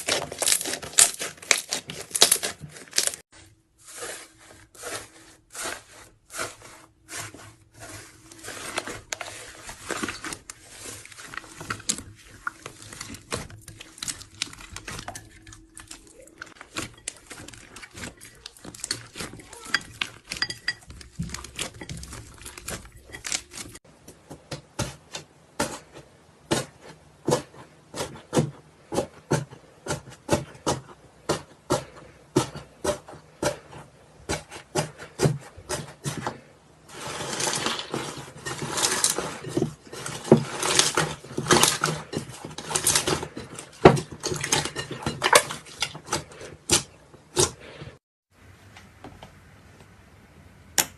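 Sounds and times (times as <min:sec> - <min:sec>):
hands squishing slime: 0:03.9 - 0:23.8.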